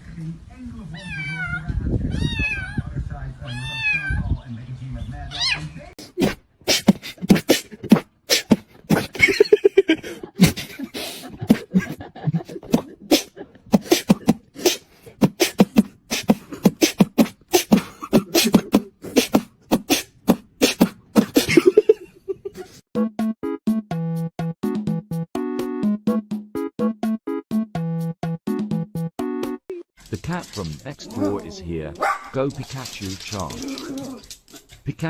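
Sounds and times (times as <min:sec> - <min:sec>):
person beatboxing: 0:06.0 - 0:09.4, 0:10.4 - 0:22.0.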